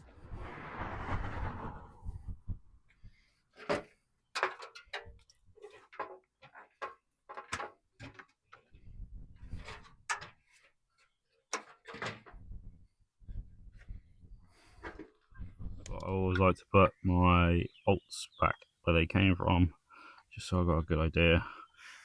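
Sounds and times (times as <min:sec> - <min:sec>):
short rush of noise: 0:00.0 - 0:02.8
hand tools and metal fasteners clinking: 0:03.7 - 0:08.7.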